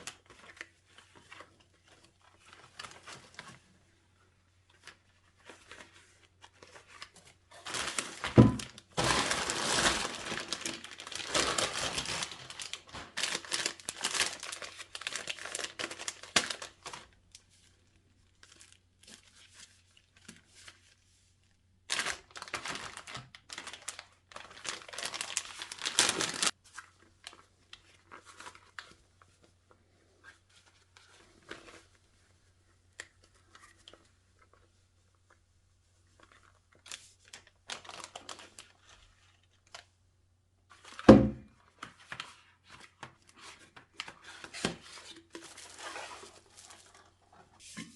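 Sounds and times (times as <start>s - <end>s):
packaging tearing and crumpling: 6.6s - 17.2s, 21.9s - 26.6s, 36.7s - 39.8s
thump: 41.1s - 41.4s.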